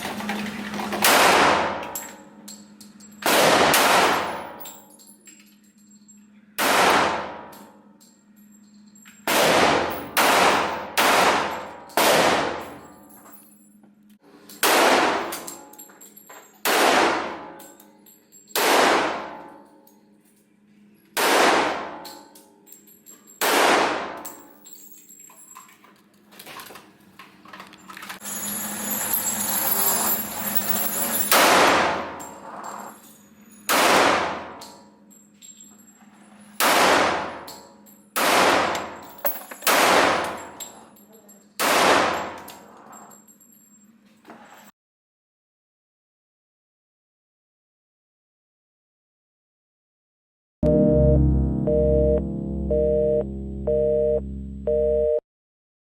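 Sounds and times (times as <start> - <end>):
gunshots with ringing tail: 9.3 - 12.6.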